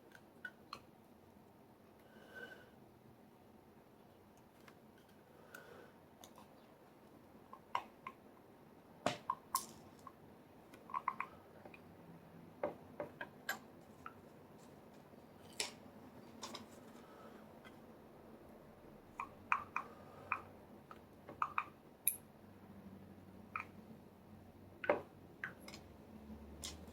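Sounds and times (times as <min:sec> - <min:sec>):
small metal parts clicking: 0:26.6 - 0:26.9.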